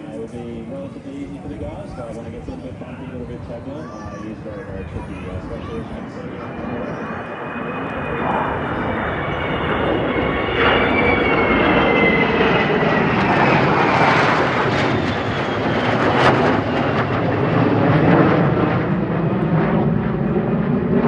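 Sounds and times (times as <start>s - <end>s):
military aircraft engines roaring: 0.0s - 21.0s.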